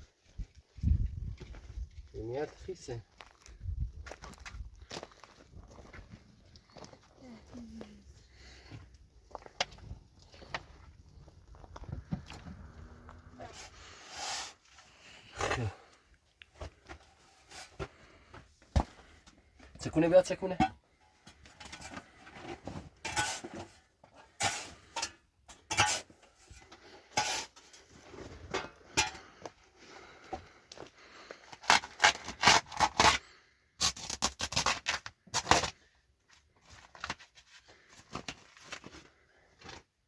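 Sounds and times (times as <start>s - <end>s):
hard objects scraping and clinking: 21.4s - 29.4s.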